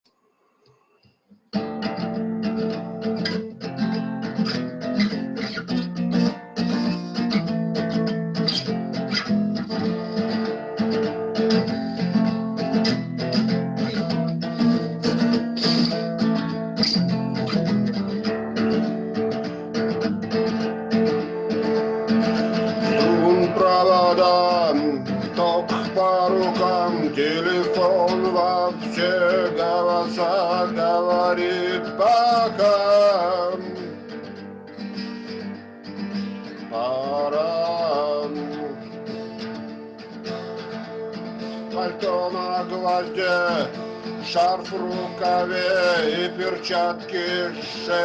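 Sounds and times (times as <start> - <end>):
acoustic guitar strumming chords: 1.5 - 48.0.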